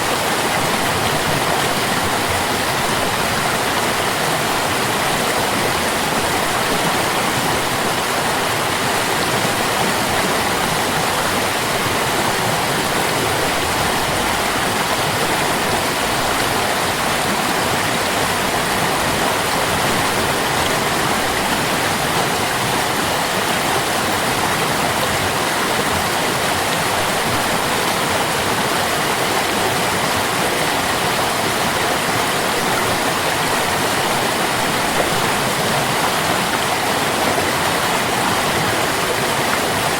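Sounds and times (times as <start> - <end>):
stream water babbling: 0.0 - 39.9.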